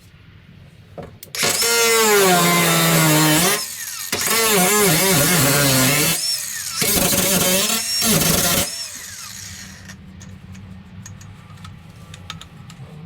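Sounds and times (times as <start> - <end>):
power tool whining: 1.4 - 10.0.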